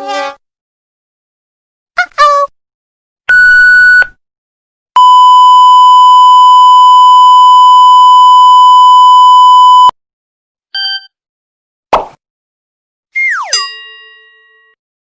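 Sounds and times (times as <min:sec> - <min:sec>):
electronic beep tone: 0:05.0 - 0:09.9
low short beep: 0:05.0 - 0:09.9.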